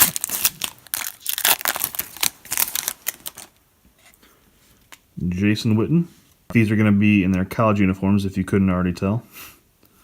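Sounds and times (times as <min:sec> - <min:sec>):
foil wrapper crinkling and tearing: 0:00.0 - 0:03.6.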